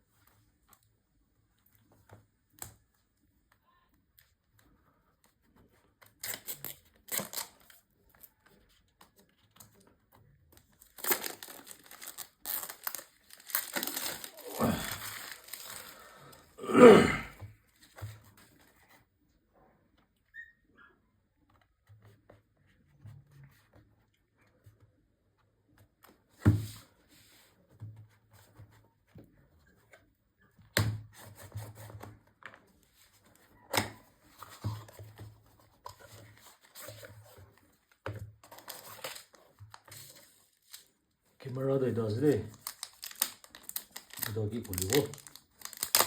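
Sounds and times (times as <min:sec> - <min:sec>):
cardboard packaging tearing and rustling: 0:06.2 - 0:07.8, 0:10.8 - 0:16.4, 0:38.4 - 0:40.9, 0:42.0 - 0:46.0.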